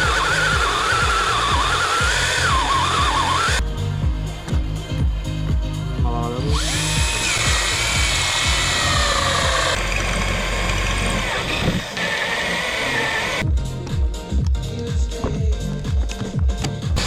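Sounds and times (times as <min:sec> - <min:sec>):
power tool whining: 0:00.0 - 0:03.6, 0:06.4 - 0:13.4
background music: 0:00.0 - 0:17.0.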